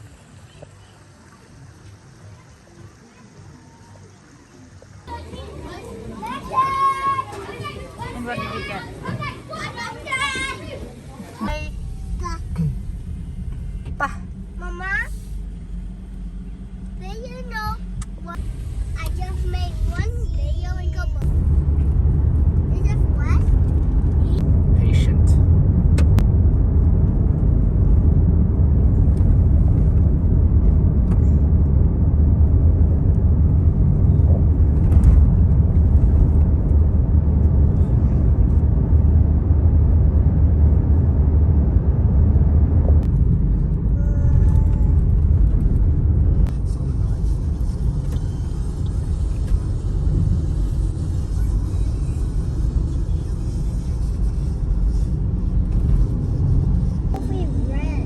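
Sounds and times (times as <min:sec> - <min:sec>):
road rumble inside moving car: 0:00.0 - 0:58.0.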